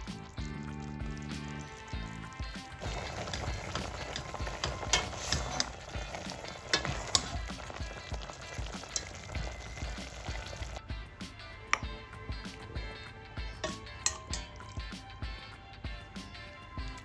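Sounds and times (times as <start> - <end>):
food sizzling in a pot: 0.0 - 10.8, 13.6 - 15.3
metal utensil clicking on pot: 2.6 - 10.8, 13.6 - 15.0.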